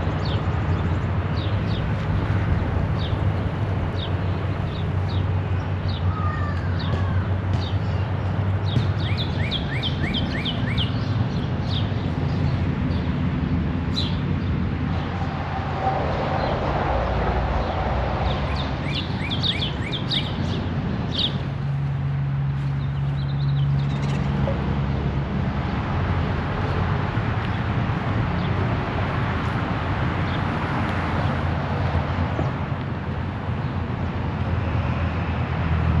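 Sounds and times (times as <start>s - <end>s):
distant traffic rumble: 0.0s - 36.0s
songbirds chirping: 3.9s - 24.6s
wind noise: 14.4s - 21.3s.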